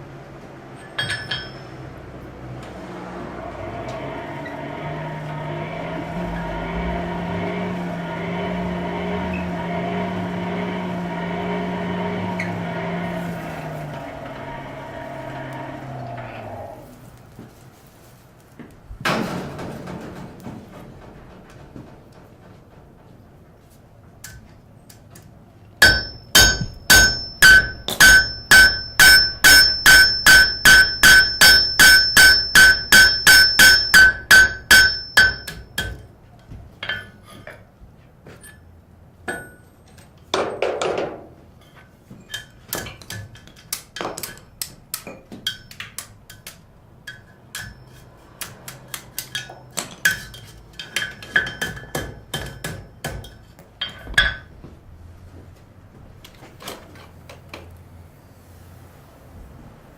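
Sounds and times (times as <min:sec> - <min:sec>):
hammer striking metal on anvil: 0:00.8 - 0:02.0, 0:25.8 - 0:36.1, 0:36.8 - 0:37.6, 0:39.3 - 0:39.7, 0:47.1 - 0:54.5.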